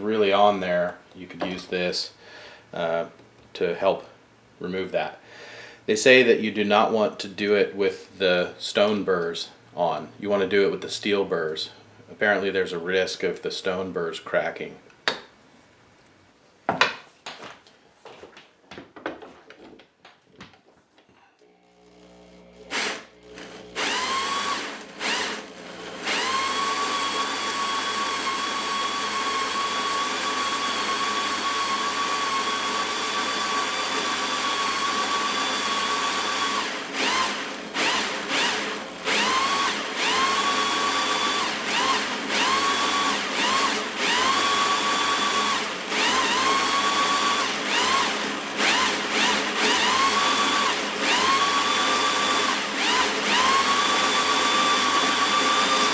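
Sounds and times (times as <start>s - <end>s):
grain mill grinding grain: 21.4s - 55.9s
power drill motor whine: 21.4s - 55.9s.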